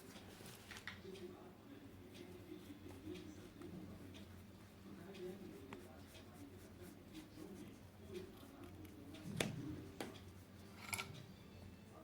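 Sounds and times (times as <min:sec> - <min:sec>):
paintbrush tapping and clicking: 0:02.2 - 0:10.4.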